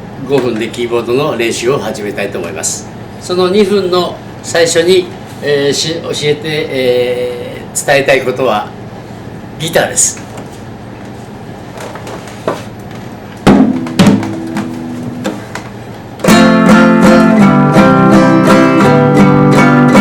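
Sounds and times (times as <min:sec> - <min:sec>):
guitar strumming: 0:13.4 - 0:20.0.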